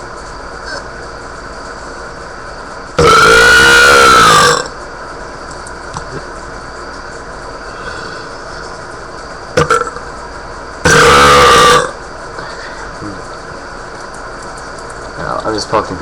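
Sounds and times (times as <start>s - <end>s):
person burping loudly: 3.0s - 4.7s, 9.6s - 10.0s, 10.9s - 12.0s.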